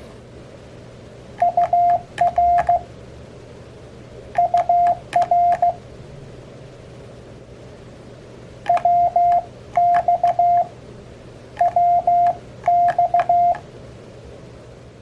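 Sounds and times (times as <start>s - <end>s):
faint hiss and hum: 0.0s - 15.0s
morse code beeps: 1.4s - 2.9s, 4.4s - 5.8s, 8.7s - 10.7s, 11.6s - 13.6s.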